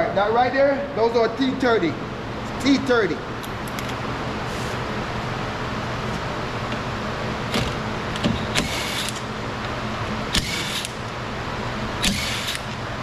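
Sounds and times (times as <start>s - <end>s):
steady low hum: 0.0s - 13.0s
cordless driver loosening bolts: 10.3s - 11.0s, 12.0s - 12.8s.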